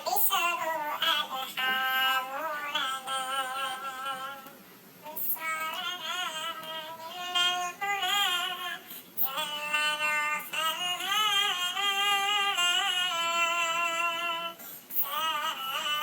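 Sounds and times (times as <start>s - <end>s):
cartoon-like singing voice: 0.0s - 16.0s.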